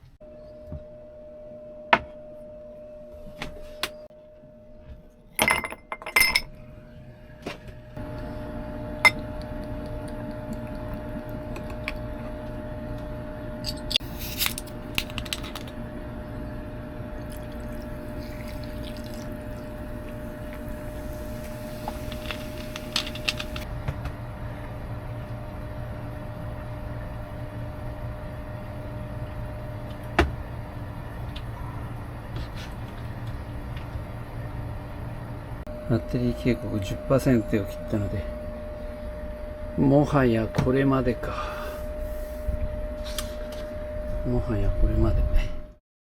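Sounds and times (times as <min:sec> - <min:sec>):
steady low hum: 0:00.2 - 0:45.8
dishes clattering and clinking: 0:05.4 - 0:06.5.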